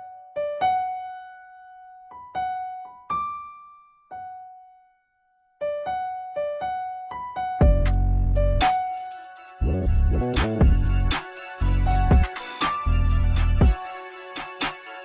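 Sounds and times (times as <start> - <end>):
electric piano melody: 0.0 - 5.0, 5.6 - 15.0.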